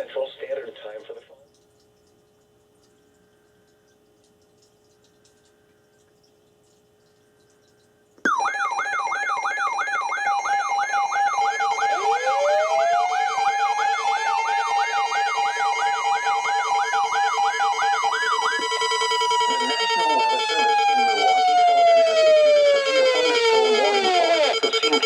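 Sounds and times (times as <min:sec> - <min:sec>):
siren winding up to high tone: 0:08.2 - 0:25.0
steady siren tone: 0:08.2 - 0:25.0
siren sweeping up and down: 0:08.3 - 0:25.0.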